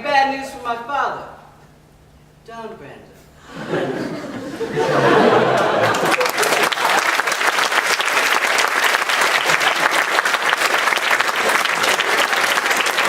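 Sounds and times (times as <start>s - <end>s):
audience applauding: 4.9s - 13.0s.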